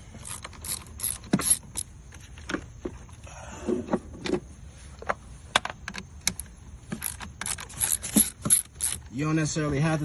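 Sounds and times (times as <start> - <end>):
ratchet clicking on metal: 0.1 - 1.9, 6.3 - 9.2.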